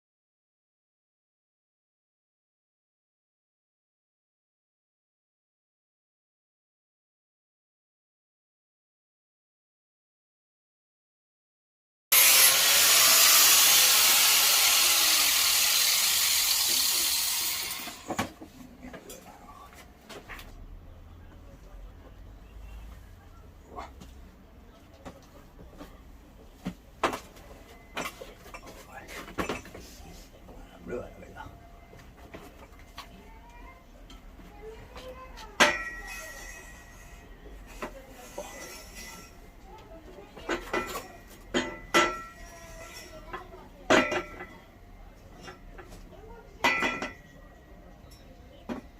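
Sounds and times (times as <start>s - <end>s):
angle grinder on metal: 12.1s - 18.1s, 35.7s - 37.3s, 38.2s - 39.4s, 40.7s - 43.2s.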